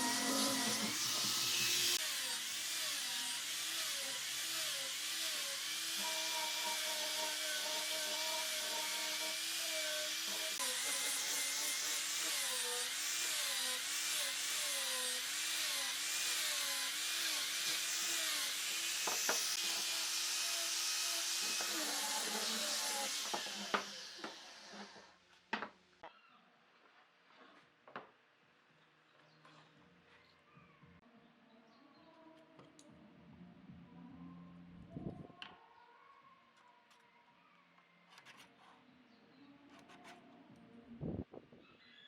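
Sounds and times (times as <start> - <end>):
power tool running on wood: 0.0 - 25.1.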